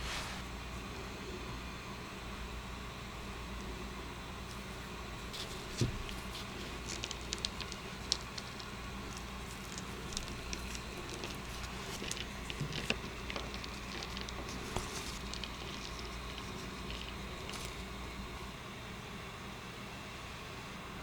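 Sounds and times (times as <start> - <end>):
steady low hum: 0.0 - 21.0
food handling clicks and crackles: 4.5 - 18.6.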